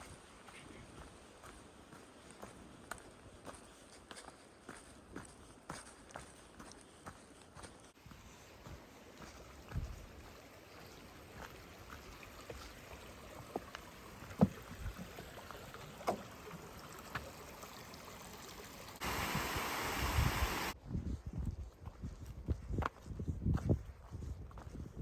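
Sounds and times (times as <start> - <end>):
footsteps on rocky trail: 0.0 - 16.3, 20.7 - 25.0
creek flowing: 8.0 - 20.8.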